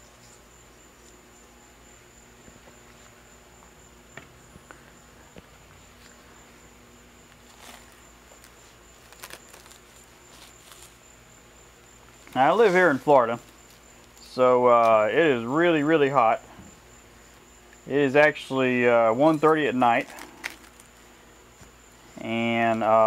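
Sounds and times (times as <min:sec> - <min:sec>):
faint crickets trilling: 0:00.0 - 0:23.0
brush scraping metal: 0:12.2 - 0:13.9.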